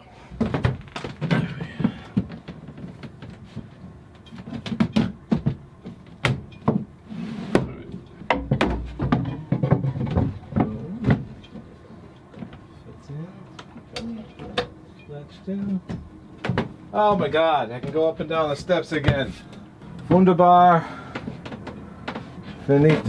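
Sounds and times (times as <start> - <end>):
wooden knocks and clatter: 0.4 - 12.7, 15.7 - 19.6.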